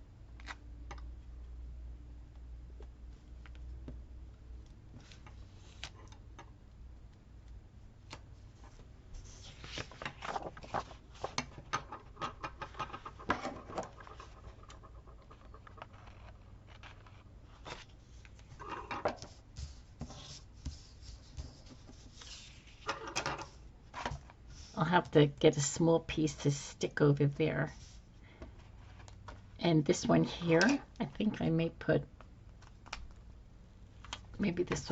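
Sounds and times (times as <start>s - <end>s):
faint low hum: 0.0s - 34.9s
sticker sheets rustling: 8.6s - 25.2s.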